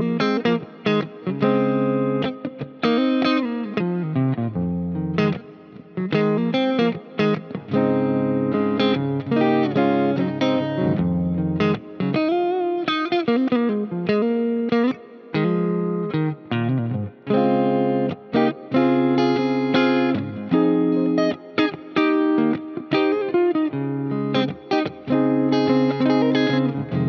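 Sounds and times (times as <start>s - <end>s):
electric guitar with delay and reverb: 0.0s - 27.0s
backing track: 24.4s - 27.0s.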